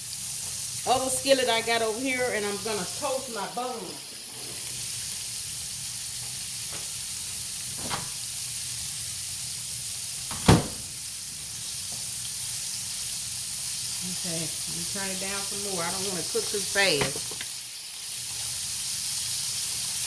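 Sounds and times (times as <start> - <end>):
meat sizzling in oil: 0.0 - 20.0.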